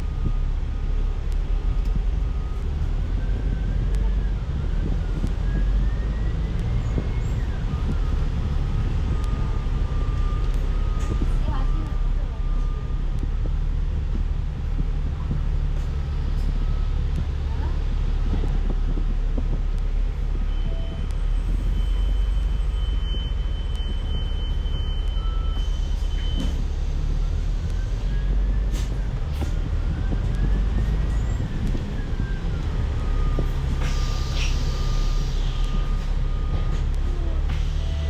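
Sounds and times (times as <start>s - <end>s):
bus engine and road rumble: 0.0s - 38.0s.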